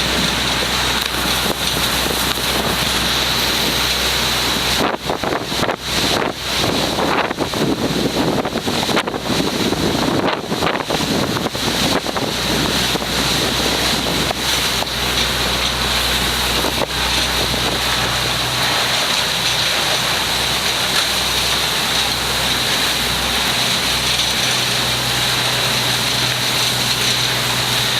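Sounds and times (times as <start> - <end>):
boat engine humming: 0.0 - 27.9
wind buffeting microphone: 0.0 - 27.9.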